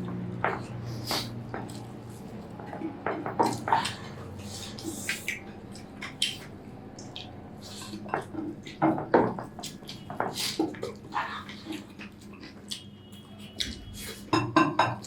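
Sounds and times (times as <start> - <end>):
dishes and cutlery clinking: 7.2 - 11.0, 11.6 - 15.0.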